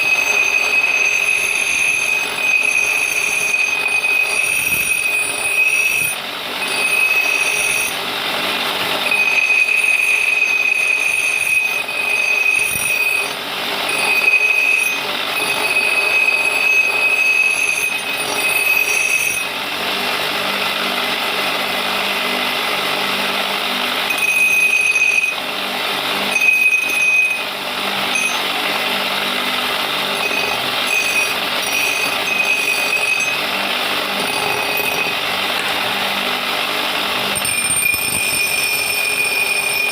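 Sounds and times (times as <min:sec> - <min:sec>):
high squealing tone: 0:00.0 - 0:08.0, 0:09.0 - 0:19.5, 0:30.2 - 0:35.7.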